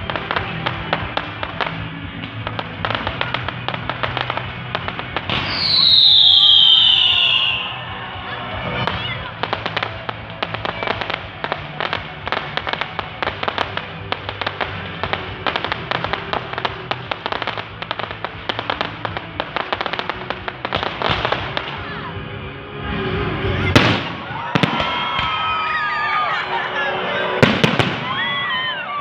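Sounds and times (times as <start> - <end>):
fireworks crackling: 0.0 - 29.0
falling whistling tones: 5.3 - 8.4, 23.1 - 29.0.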